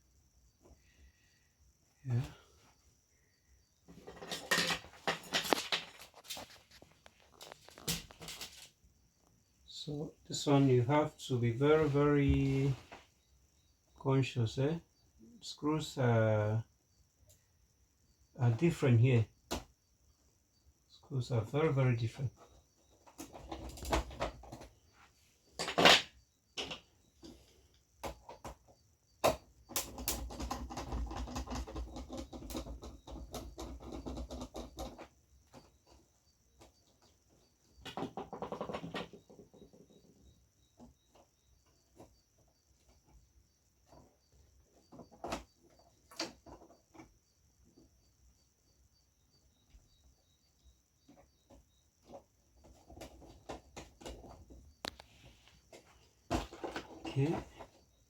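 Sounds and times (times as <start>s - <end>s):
scraping and rubbing: 3.9s - 8.8s.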